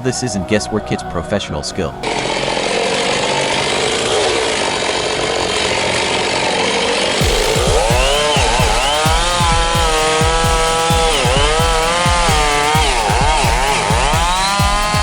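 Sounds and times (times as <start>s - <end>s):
chainsaw cutting wood: 2.0s - 15.0s
music with low beat: 5.3s - 15.0s.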